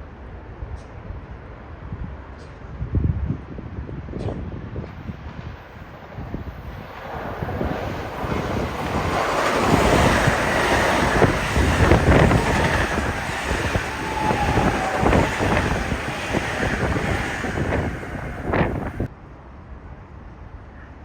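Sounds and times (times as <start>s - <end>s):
train passing at speed: 4.9s - 19.1s
wind on microphone: 6.1s - 19.1s
wheels clattering over rail joints: 6.6s - 19.1s.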